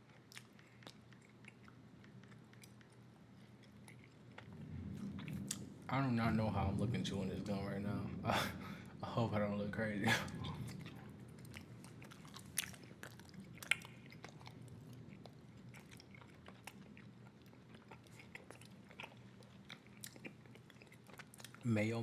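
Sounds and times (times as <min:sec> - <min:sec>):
mouth chewing bubble gum: 0:00.0 - 0:05.6, 0:10.6 - 0:21.7.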